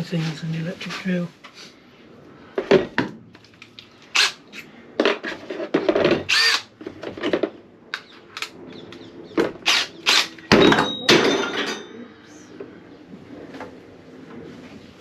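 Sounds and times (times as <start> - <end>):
electric drill with hole saw: 4.2 - 4.4, 6.3 - 6.7, 9.6 - 10.4.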